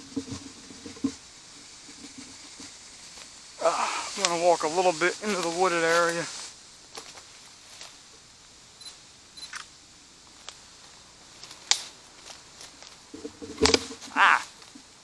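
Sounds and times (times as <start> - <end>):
twigs cracking and scraping: 2.1 - 4.5, 5.2 - 8.0, 10.3 - 14.9
branches snapping: 11.4 - 14.9
man shouting: 14.1 - 14.5.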